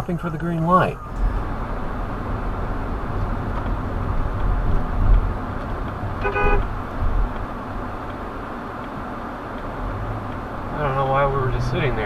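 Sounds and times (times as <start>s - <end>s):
idling traffic rumble: 0.0s - 12.0s
car horn toot: 6.0s - 7.0s.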